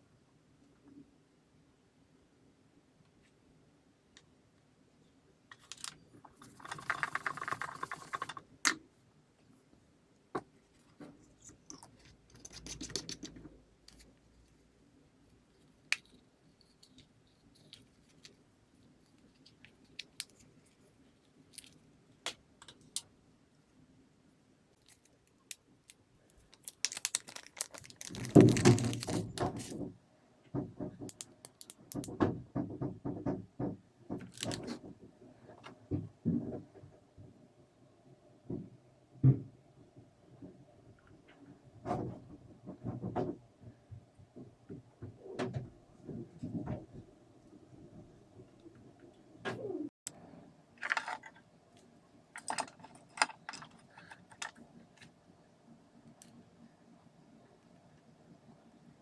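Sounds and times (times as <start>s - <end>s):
clicks of small plastic parts: 31.1s - 32.1s.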